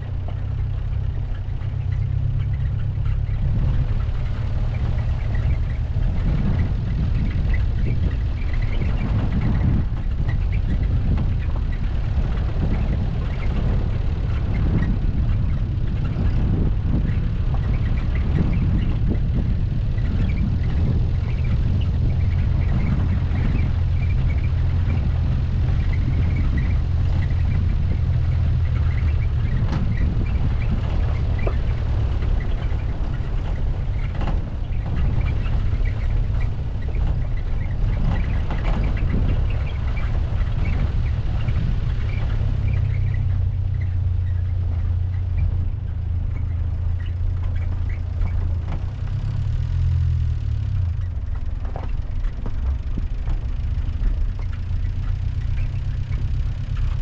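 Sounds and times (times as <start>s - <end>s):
car engine and road noise: 0.0s - 57.0s.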